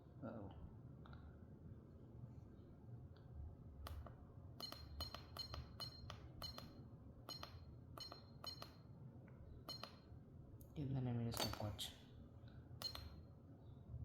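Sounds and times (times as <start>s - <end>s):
push buttons clicking: 12.8s - 13.2s.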